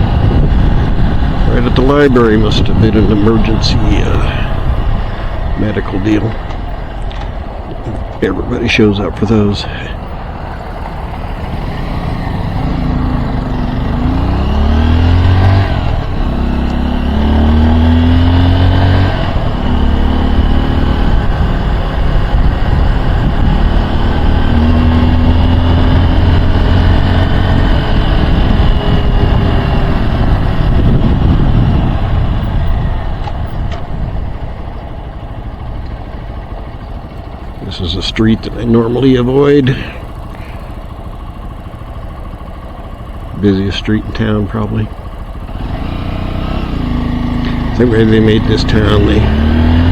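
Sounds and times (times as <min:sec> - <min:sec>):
wind on microphone: 0:00.0 - 0:01.8, 0:27.9 - 0:34.4
motorcycle engine accelerating: 0:00.0 - 0:49.9.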